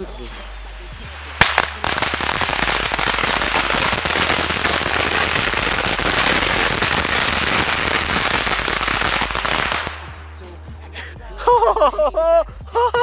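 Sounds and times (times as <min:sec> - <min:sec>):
firecrackers crackling: 0:00.0 - 0:10.7.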